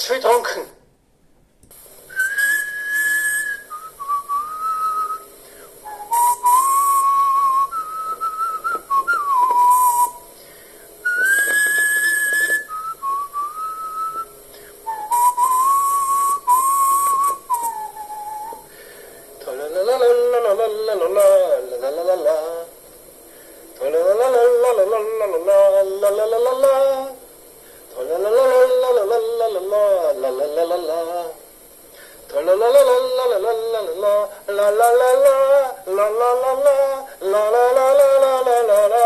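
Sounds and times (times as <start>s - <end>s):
man whistling a tune: 2.1s - 10.3s, 11.0s - 18.8s.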